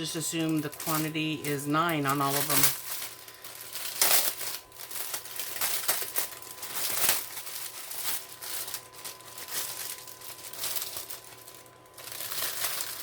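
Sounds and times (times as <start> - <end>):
plastic bags crinkling: 0.0 - 13.0.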